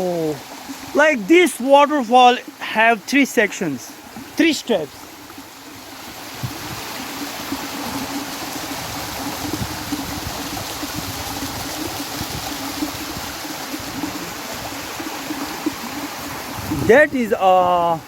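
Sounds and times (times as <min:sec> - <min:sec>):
waterfall pouring: 0:00.0 - 0:18.0.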